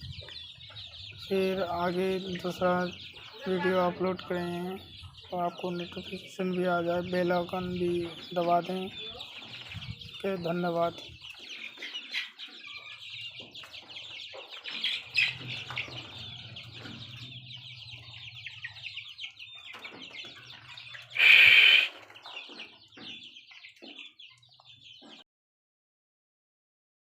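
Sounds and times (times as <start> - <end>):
chicks peeping and cheeping: 0.0 - 25.2
loud chick call: 21.1 - 22.2.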